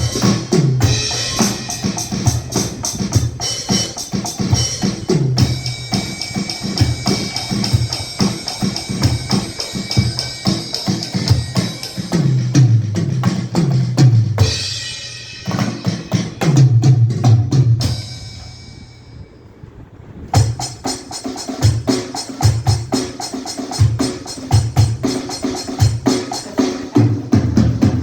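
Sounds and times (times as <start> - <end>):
cymbal crash: 0.0 - 13.0, 17.8 - 19.4
electronic drum kit groove: 0.0 - 18.5, 20.4 - 28.0.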